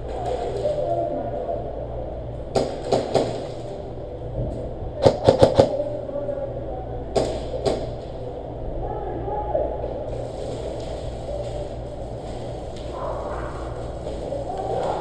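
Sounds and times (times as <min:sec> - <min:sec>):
airsoft guns firing: 0:02.5 - 0:03.6, 0:05.0 - 0:05.8, 0:07.2 - 0:08.0.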